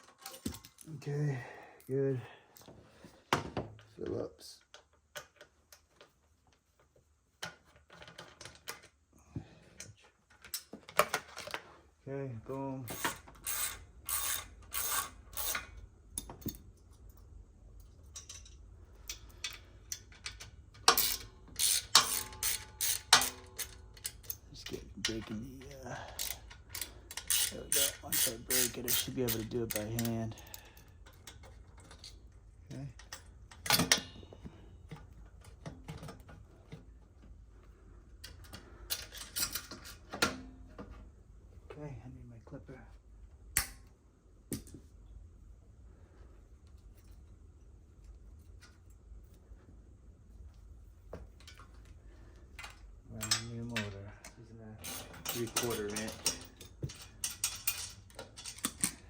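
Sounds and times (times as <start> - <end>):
metal tools clinking: 0.0 - 1.1, 17.8 - 32.2, 52.6 - 59.0
ratchet wrench clicking: 12.9 - 15.8, 19.1 - 24.4, 25.1 - 31.4, 54.8 - 59.0.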